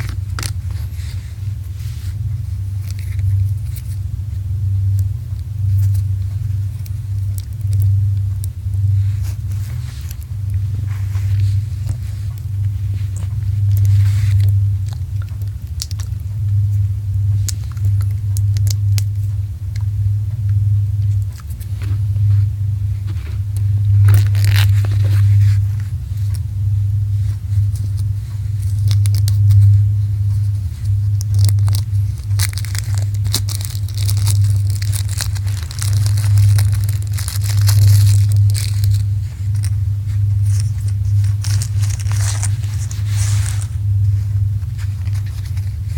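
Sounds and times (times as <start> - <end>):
packaging crinkling and tearing: 0.0 - 1.2, 6.7 - 8.4, 13.2 - 16.2, 17.5 - 19.1, 24.1 - 25.2, 27.7 - 29.7, 30.3 - 43.8
low electrical hum: 0.0 - 45.9.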